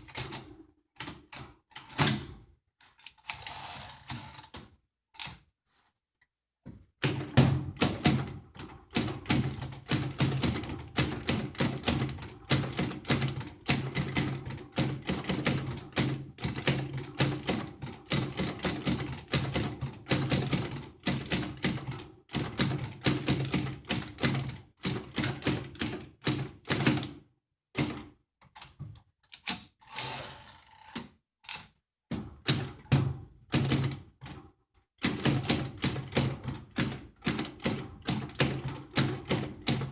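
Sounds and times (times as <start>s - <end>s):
typewriter keystrokes: 7.0s - 27.2s, 32.3s - 34.4s, 35.0s - 39.9s.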